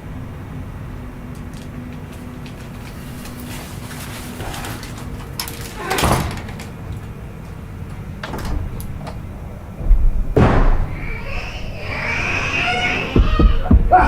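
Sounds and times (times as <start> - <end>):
noisy bumps: 0.0 - 14.0
steady low background noise: 0.0 - 14.0
deep thud: 9.8 - 11.6, 13.1 - 14.0.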